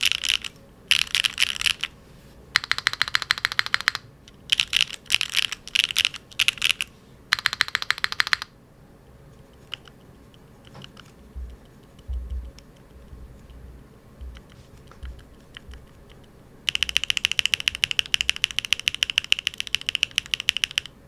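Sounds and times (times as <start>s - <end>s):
mechanical keyboard typing: 0.0s - 1.9s, 2.6s - 8.5s, 9.6s - 10.0s, 10.6s - 13.6s, 14.2s - 21.0s
low thuds: 11.3s - 15.9s.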